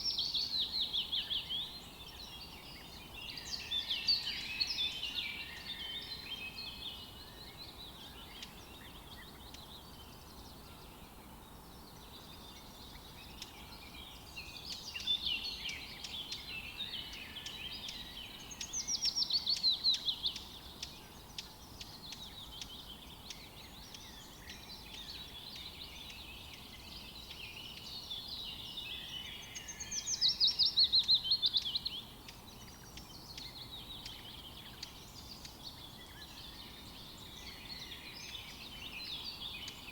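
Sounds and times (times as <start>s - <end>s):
sparrows chirping: 11.6s - 39.9s.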